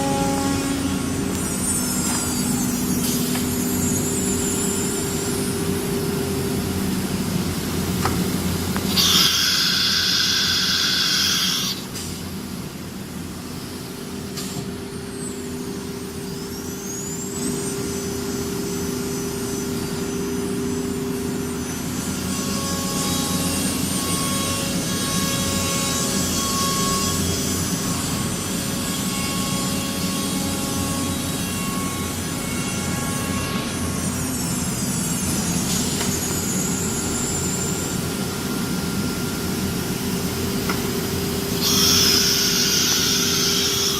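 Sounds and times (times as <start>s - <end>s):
spindle whine: 0.0s - 12.0s
machine hum: 0.0s - 14.2s
loud hiss: 8.9s - 11.9s.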